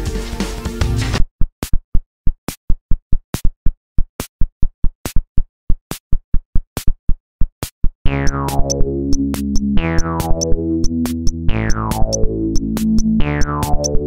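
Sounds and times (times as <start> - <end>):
bass: 0.0 - 1.2, 8.1 - 14.0
drum machine beat: 0.0 - 1.8, 8.1 - 14.0
synthesizer falling sweeps: 8.1 - 14.0.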